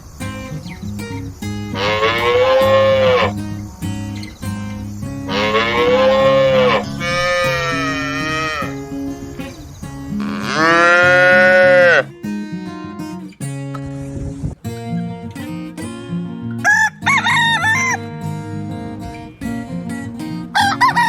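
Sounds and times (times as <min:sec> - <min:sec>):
strummed acoustic guitar music: 0:00.0 - 0:21.0
cow mooing: 0:01.8 - 0:03.4, 0:05.3 - 0:08.8, 0:10.2 - 0:12.1.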